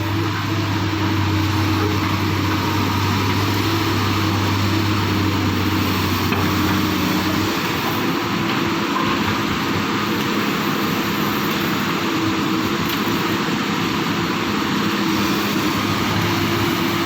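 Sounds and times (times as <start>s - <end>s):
diesel engine droning: 0.0s - 8.5s, 14.0s - 17.0s.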